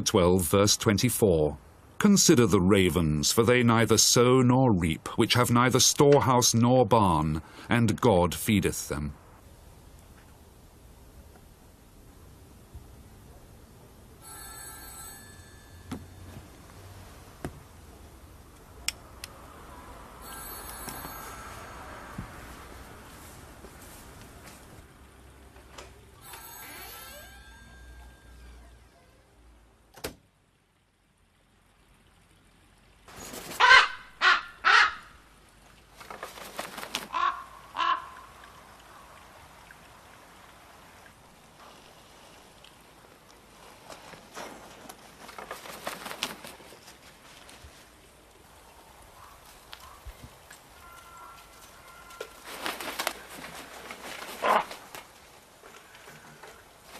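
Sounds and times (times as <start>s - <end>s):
telephone ringing: 14.2s - 16.3s, 20.2s - 22.2s, 26.2s - 28.5s
ravens calling: 33.5s - 35.2s, 36.2s - 39.2s, 48.7s - 55.0s.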